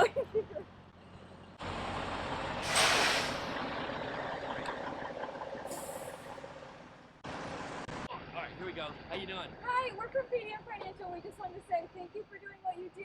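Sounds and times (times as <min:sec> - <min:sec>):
trucks idling: 0:00.0 - 0:13.0
air brake hiss: 0:02.6 - 0:03.6.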